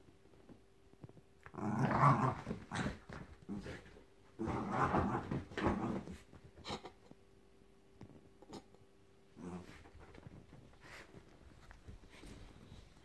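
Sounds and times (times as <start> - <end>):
dog growling: 1.4 - 3.8, 9.4 - 9.8.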